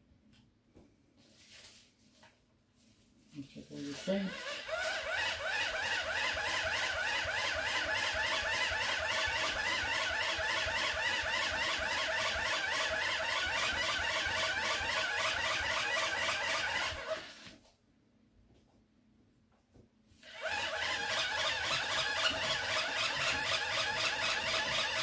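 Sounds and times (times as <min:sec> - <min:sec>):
hand-crank dynamo whirring: 0:03.8 - 0:17.5, 0:20.2 - 0:25.0.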